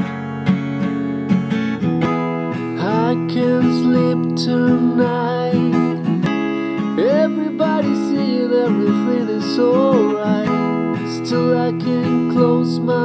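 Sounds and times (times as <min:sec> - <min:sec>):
acoustic guitar strumming: 0:00.0 - 0:13.0
person singing: 0:02.8 - 0:13.0.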